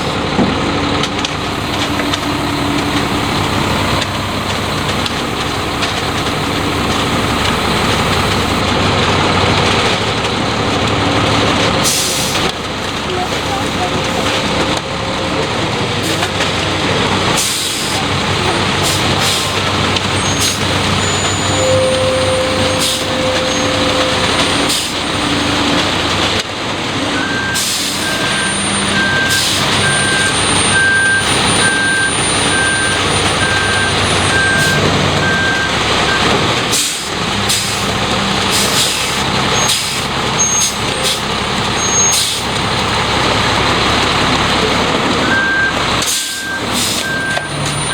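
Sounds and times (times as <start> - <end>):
concrete mixer truck running: 0.0 - 47.9
backup alarm beeping: 27.2 - 36.3, 45.2 - 47.9.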